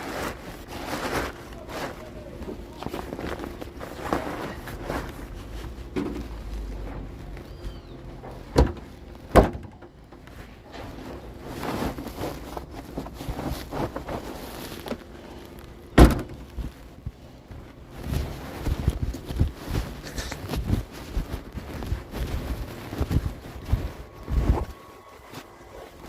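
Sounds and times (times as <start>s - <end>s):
heavy wooden knocks and thuds: 8.4s - 10.0s, 16.0s - 16.5s.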